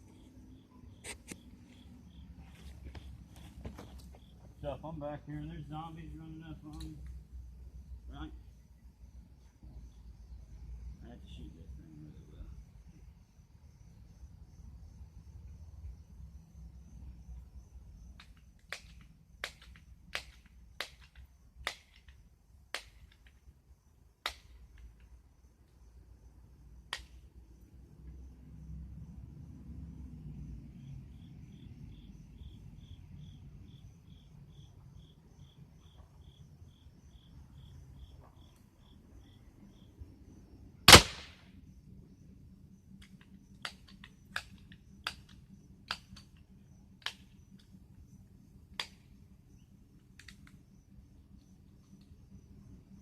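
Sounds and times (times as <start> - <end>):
air pistol shot: 40.9 - 41.5.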